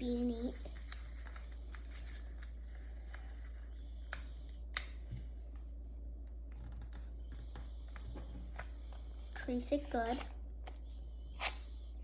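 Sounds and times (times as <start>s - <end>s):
paper rustling and folding: 0.0s - 3.8s.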